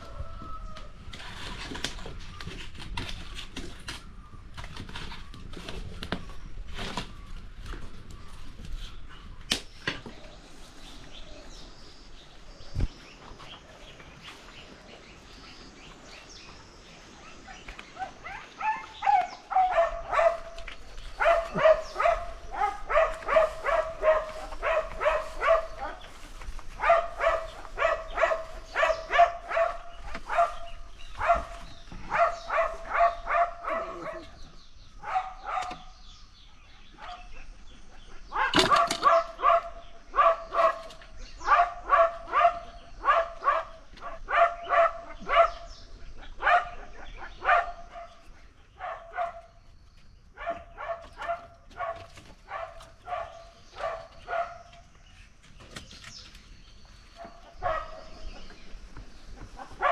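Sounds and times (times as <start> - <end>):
dog barking: 18.0 - 26.1, 26.8 - 34.3, 35.0 - 35.9, 38.3 - 45.7, 46.4 - 48.2, 48.8 - 49.5, 50.4 - 54.8, 57.2 - 58.2, 59.6 - 59.9.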